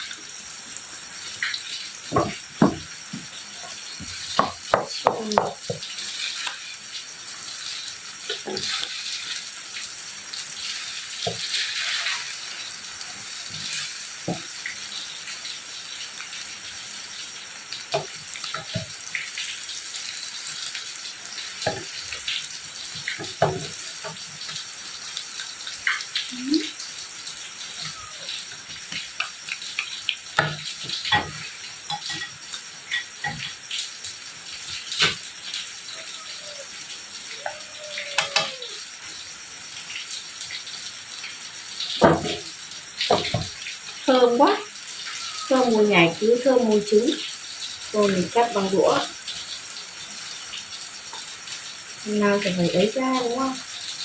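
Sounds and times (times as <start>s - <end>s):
egg sizzling in a pan: 0.0s - 54.0s
utensil knocking against pan: 2.1s - 3.3s, 4.4s - 5.8s.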